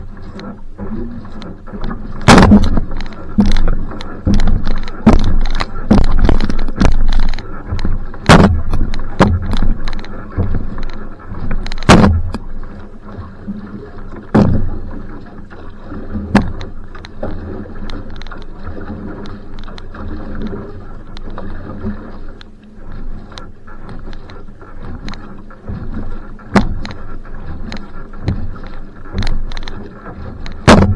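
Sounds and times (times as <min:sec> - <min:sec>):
wind rumble on microphone: 0:00.0 - 0:22.4, 0:23.0 - 0:30.9
water noise: 0:00.0 - 0:30.9
sharp knocks: 0:02.2 - 0:03.7, 0:04.3 - 0:10.6, 0:11.6 - 0:12.5, 0:14.3 - 0:14.7, 0:26.5 - 0:26.9, 0:30.6 - 0:30.9.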